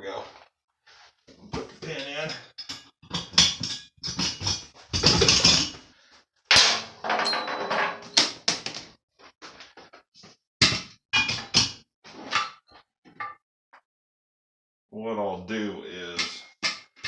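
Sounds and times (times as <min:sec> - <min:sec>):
steel parts clanking: 0:06.5 - 0:08.4.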